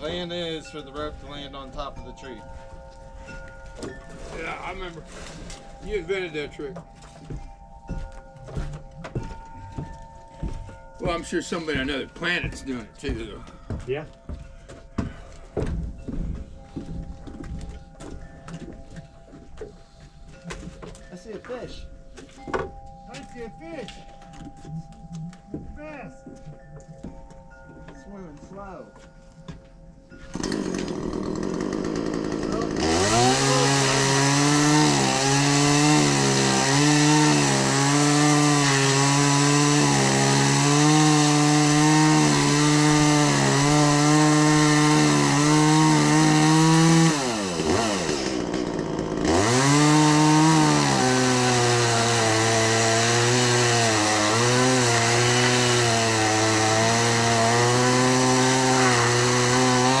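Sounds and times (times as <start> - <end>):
chainsaw cutting: 3.2 - 6.8, 30.2 - 60.0.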